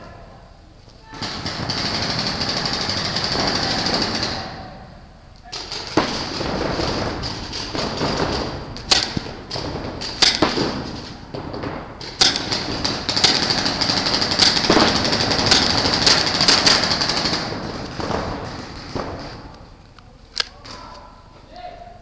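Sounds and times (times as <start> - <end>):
paintball markers firing: 5.5 - 19.7.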